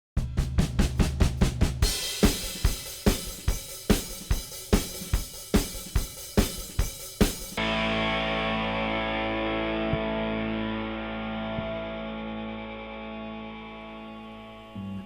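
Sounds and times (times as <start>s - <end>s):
drum kit playing rock beat: 0.2s - 10.5s
low bass note: 7.6s - 15.0s.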